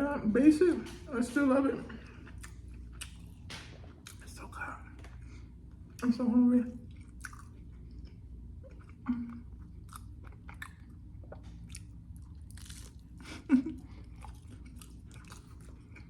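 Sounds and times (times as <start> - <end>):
faint low hum: 0.0 - 16.0
mouth chewing food: 1.9 - 6.0, 6.8 - 16.0.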